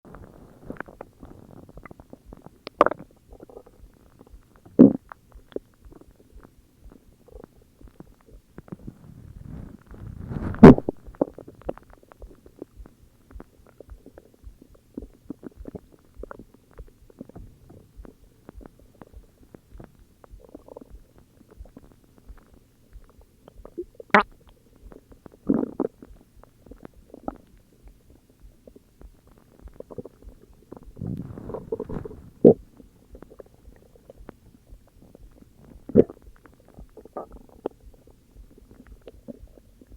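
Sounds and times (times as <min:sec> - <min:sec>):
stomach growling and gurgling: 0:00.1 - 0:39.9.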